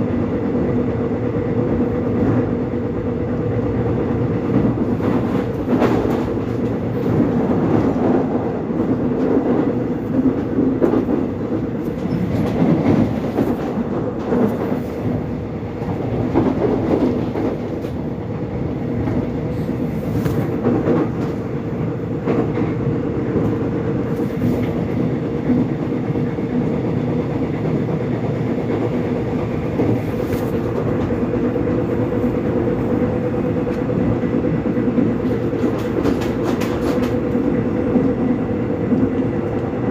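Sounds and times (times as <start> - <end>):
subway train rumbling: 0.0 - 39.9
wheels clicking over rails: 22.2 - 38.3.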